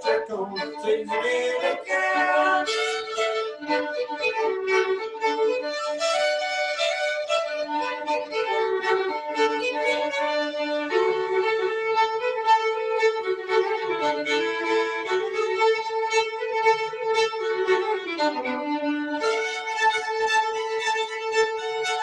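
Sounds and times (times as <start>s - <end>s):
fiddle melody: 0.0s - 22.0s.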